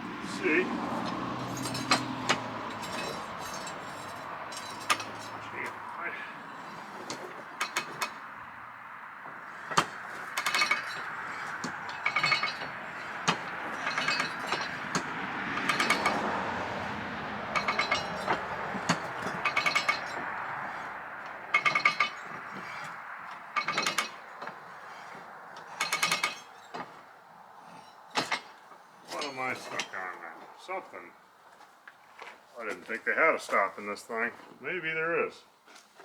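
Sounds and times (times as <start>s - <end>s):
log carriage grinding rattle: 0.0s - 31.1s
metallic clinking: 0.4s - 8.5s, 9.3s - 30.1s.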